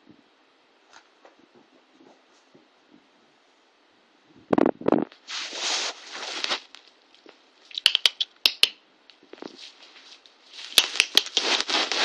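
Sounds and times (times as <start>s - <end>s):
claws clicking on floor: 6.4s - 12.0s
cats scrabbling: 10.6s - 12.0s.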